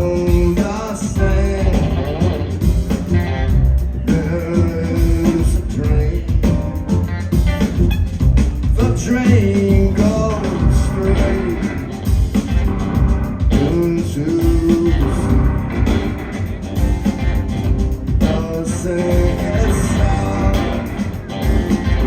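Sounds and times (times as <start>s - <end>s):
person singing: 0.0s - 2.6s, 4.0s - 6.6s, 8.8s - 12.0s, 13.5s - 16.2s, 18.2s - 22.0s
live rock band playing: 0.0s - 22.0s.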